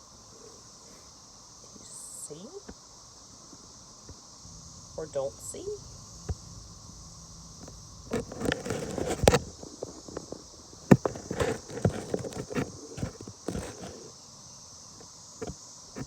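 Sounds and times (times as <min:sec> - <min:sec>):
high-pitched insect chorus: 0:00.0 - 0:16.0
close knocks and rustles: 0:07.5 - 0:14.2.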